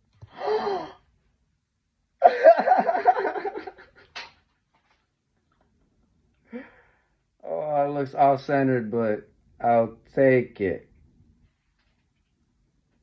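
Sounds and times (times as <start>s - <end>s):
person laughing: 2.2s - 4.2s.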